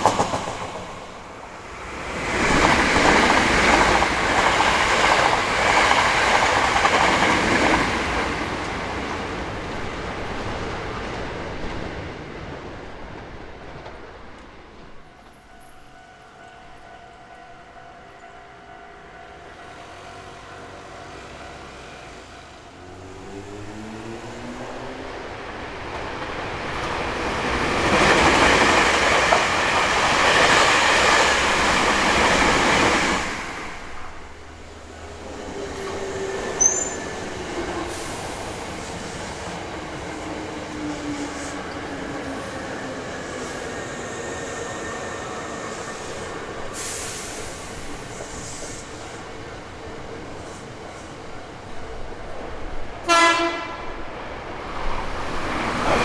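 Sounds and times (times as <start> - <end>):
electric train passing: 0.0 - 56.0
level crossing warning bell: 14.8 - 23.8.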